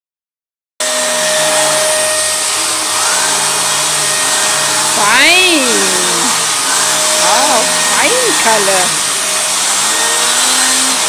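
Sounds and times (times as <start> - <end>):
vacuum cleaner running: 0.8 - 11.0
person's voice: 4.9 - 6.4, 7.2 - 9.0.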